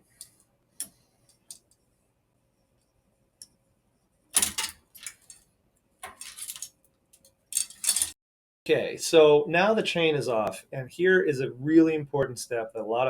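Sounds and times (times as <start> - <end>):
bicycle chain clicking and rattling: 6.0 - 8.2.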